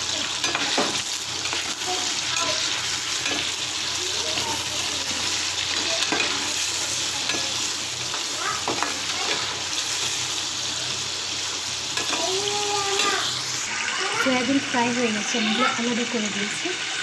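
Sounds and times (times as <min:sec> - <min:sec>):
food sizzling in hot oil: 0:00.0 - 0:17.0
stirring clicks and scrapes in pan: 0:00.1 - 0:10.4, 0:11.0 - 0:13.7.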